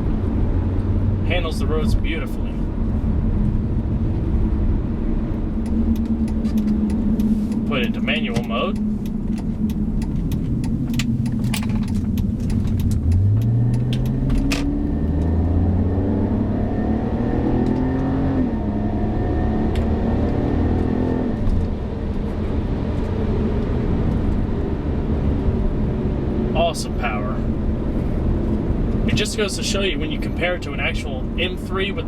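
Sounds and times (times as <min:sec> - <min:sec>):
car engine revving through gears: 0:04.7 - 0:30.2.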